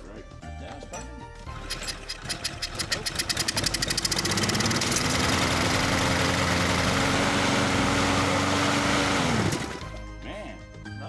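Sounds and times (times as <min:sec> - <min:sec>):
lawn mower engine starting and running: 0:01.5 - 0:10.2.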